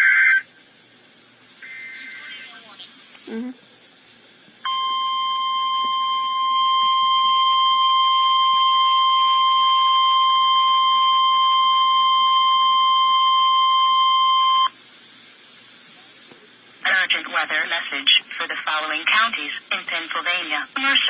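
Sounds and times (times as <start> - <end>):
shrill alert beep: 4.7 - 14.7.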